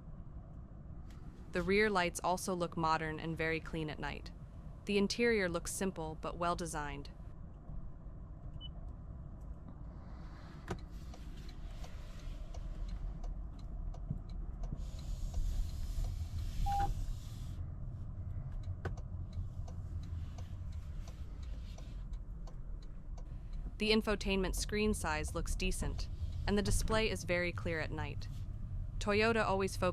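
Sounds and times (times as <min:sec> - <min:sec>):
car interior rumble: 0:00.0 - 0:29.9
hiss: 0:14.8 - 0:17.6
short beep: 0:16.7 - 0:16.9.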